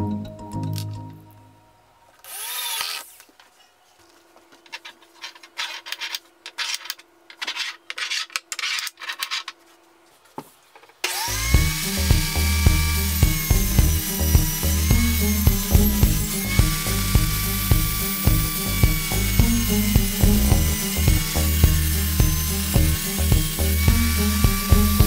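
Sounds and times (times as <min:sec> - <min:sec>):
power tool whine: 0:02.2 - 0:03.2, 0:11.0 - 0:25.0.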